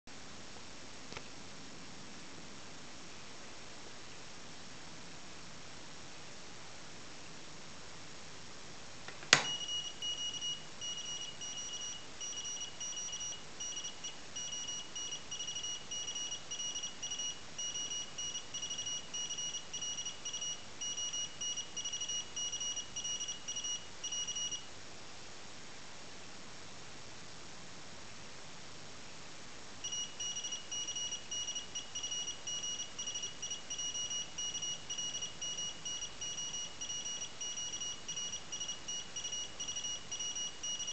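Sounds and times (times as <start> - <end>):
morse code beeps: 9.4 - 24.6, 29.8 - 40.9.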